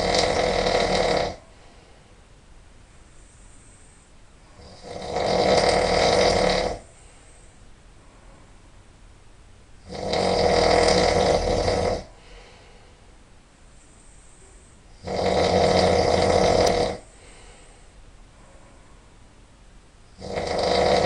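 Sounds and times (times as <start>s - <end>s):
person snoring loudly: 0.0s - 1.4s, 4.6s - 6.9s, 9.8s - 12.2s, 15.0s - 17.4s, 20.1s - 21.0s.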